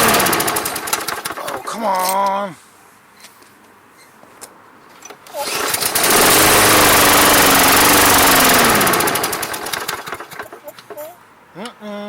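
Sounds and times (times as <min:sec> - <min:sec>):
mower engine running: 0:00.0 - 0:01.8, 0:05.3 - 0:11.0.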